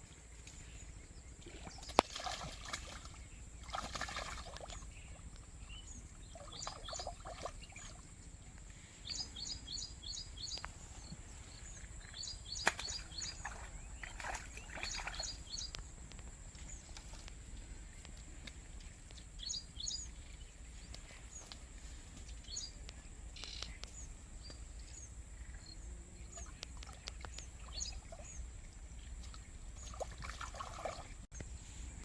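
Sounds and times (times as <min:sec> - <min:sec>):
small birds chirping: 0:00.4 - 0:32.0
water splashing: 0:01.6 - 0:04.9, 0:12.5 - 0:15.8, 0:29.2 - 0:31.3.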